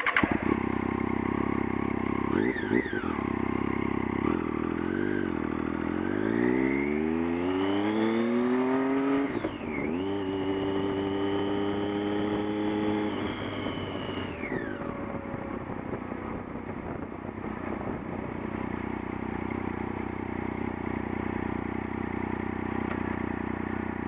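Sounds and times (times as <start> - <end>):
vehicle engine revving: 0.0 - 16.0.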